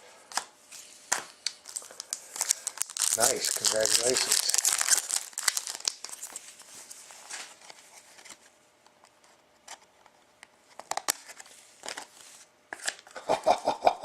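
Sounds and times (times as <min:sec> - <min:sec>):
trading cards rustling: 0:00.7 - 0:08.4.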